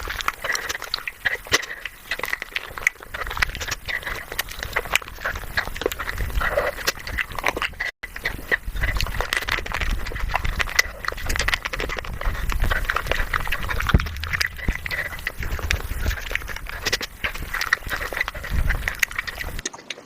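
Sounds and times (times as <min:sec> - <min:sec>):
sped-up chewing and crunching: 0:00.0 - 0:20.0.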